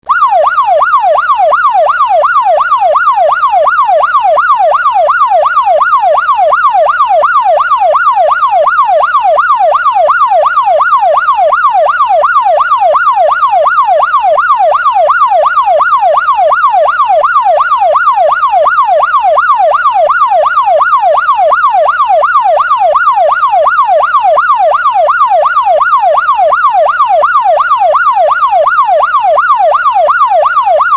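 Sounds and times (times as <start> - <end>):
police siren yelping: 0.0 - 30.9.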